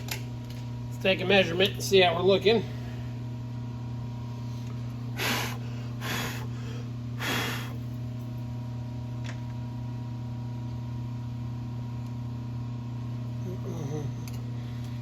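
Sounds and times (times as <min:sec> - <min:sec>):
steady low hum: 0:00.0 - 0:15.0
breathy puffs of air: 0:05.1 - 0:07.8.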